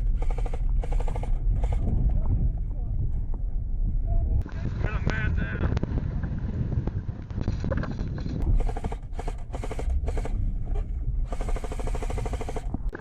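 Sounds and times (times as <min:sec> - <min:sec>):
airsoft rifle rapid-fire bursts: 0:00.0 - 0:01.8, 0:08.5 - 0:10.4, 0:11.3 - 0:12.8
low steady rumble: 0:00.0 - 0:13.0.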